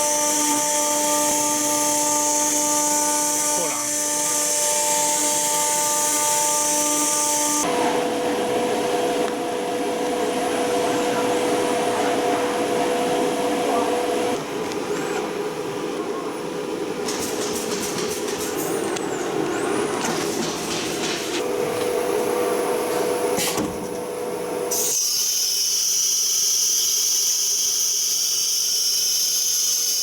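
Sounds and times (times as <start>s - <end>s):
router spindle whine: 0.0s - 16.9s.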